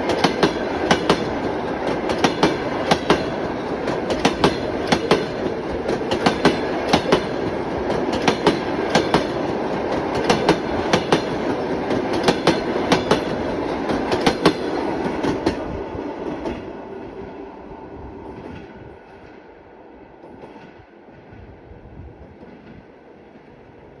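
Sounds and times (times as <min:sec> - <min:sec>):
train wheels clicking over rail joints: 0:00.0 - 0:17.0
train rumble: 0:00.0 - 0:24.0.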